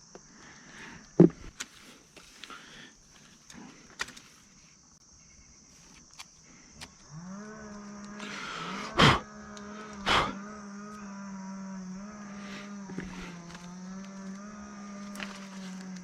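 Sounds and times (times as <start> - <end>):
motor hum: 6.4 - 16.0.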